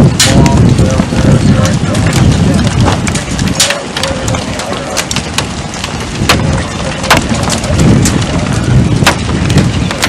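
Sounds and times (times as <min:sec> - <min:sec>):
wind buffeting microphone: 0:00.0 - 0:10.0
sharp ticks and knocks: 0:01.6 - 0:08.3.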